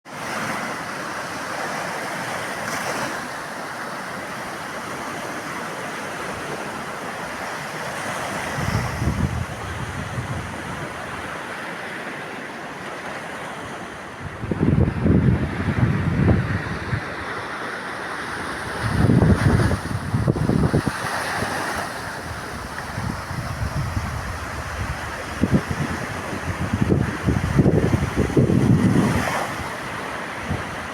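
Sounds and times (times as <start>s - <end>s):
wind: 0.0s - 30.9s
sea surf: 0.1s - 30.9s
wind buffeting microphone: 8.3s - 11.4s, 13.7s - 17.6s, 18.3s - 30.9s.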